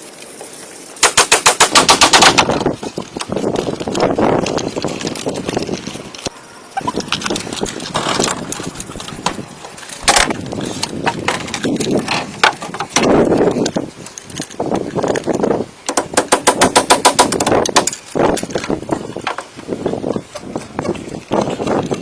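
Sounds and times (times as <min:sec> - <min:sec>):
hand tools knocking on wood: 0:15.9 - 0:18.0.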